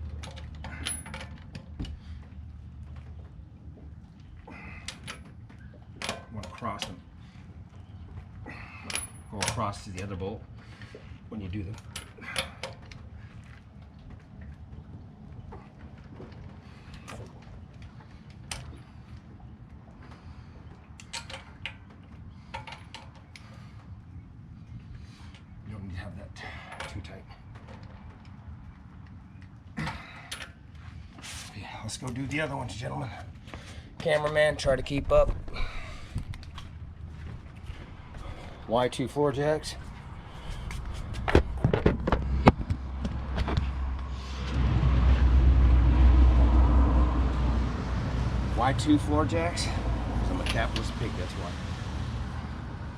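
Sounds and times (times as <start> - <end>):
low steady rumble: 23.3 - 52.9
sharp knocks and clicks: 40.7 - 44.1.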